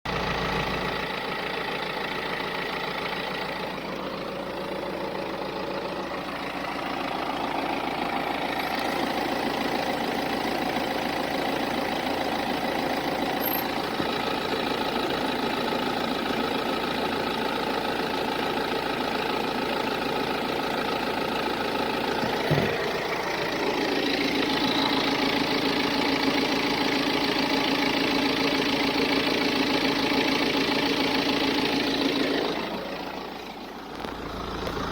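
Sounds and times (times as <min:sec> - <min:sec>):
diesel engine idling: 0:00.0 - 0:34.9
sharp engine knock: 0:22.2 - 0:23.0.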